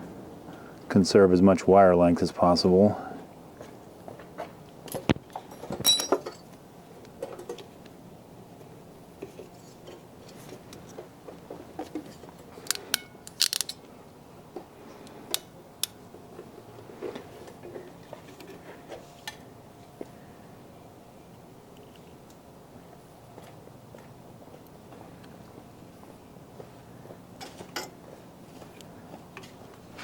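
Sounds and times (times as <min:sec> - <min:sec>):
metallic clicks of hand tools: 0:12.6 - 0:13.8.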